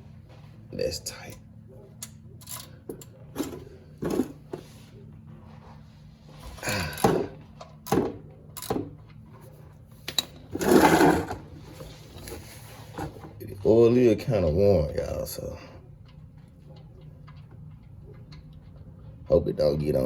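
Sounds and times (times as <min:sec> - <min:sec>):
metal scrape: 0:10.5 - 0:13.2.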